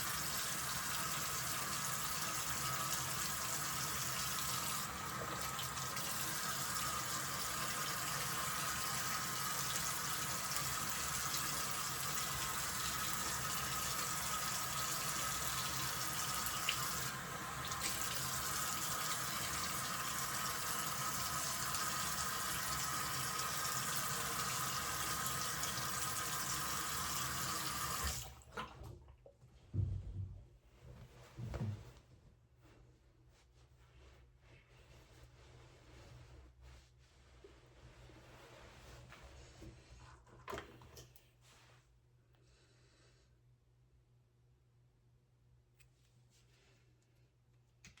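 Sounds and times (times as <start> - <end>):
soft low knocks: 29.8 - 30.6.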